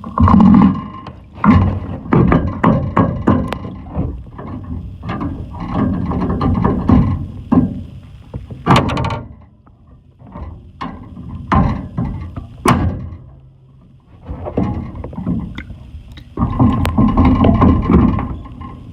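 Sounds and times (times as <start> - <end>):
heavy knocks and thuds: 1.4 - 9.3, 11.4 - 13.2.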